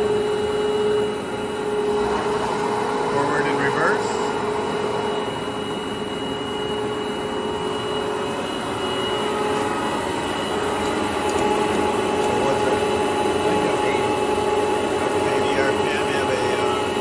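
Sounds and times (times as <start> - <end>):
lathe running with steady whine: 0.0 - 17.0.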